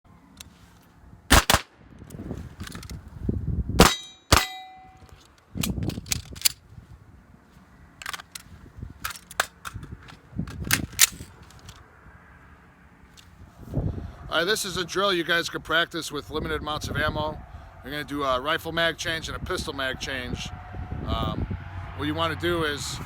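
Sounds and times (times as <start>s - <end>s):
loud gunshots: 1.3s - 1.7s, 3.8s - 4.6s
short metallic ring: 3.8s - 5.1s.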